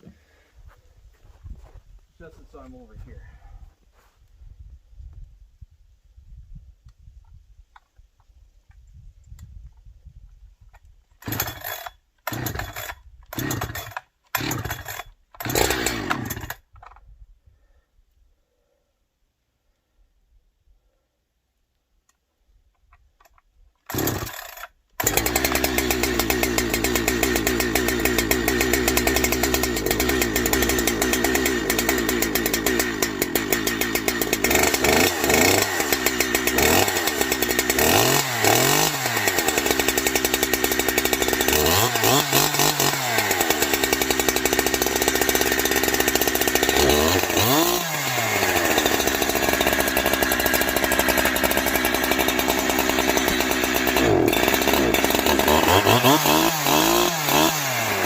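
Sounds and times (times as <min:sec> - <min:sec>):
chainsaw starting and revving: 0:11.2 - 0:17.0, 0:23.8 - 0:58.0.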